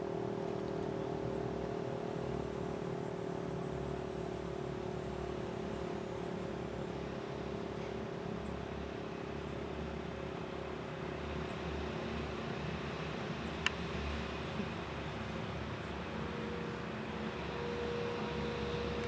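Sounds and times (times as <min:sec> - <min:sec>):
tornado siren steady tone: 0:14.3 - 0:19.0.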